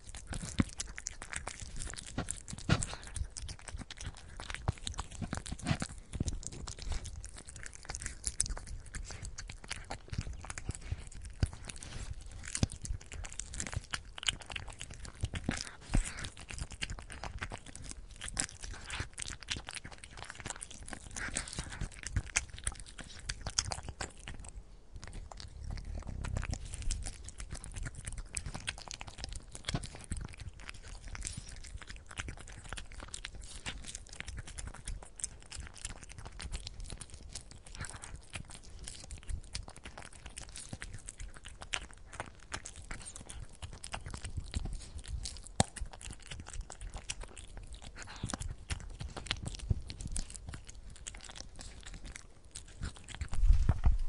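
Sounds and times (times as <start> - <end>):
cat crunching food: 0.0 - 54.0.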